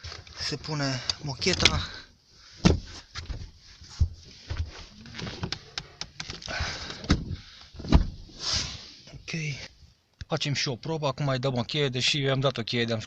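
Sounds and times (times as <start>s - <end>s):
handling knocks and clicks: 1.1s - 1.8s
rustling: 1.5s - 9.1s.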